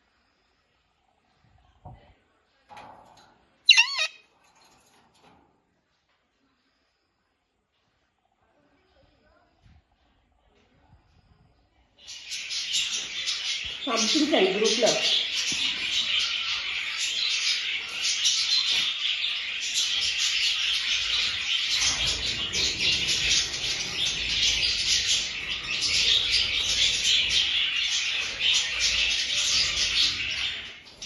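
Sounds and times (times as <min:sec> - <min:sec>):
flock of birds chirping: 0:03.7 - 0:04.2, 0:12.0 - 0:31.0.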